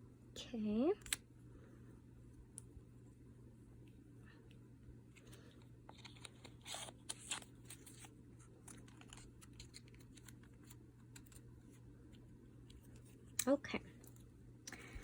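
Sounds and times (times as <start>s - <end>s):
packaging rustling: 5.2s - 11.5s.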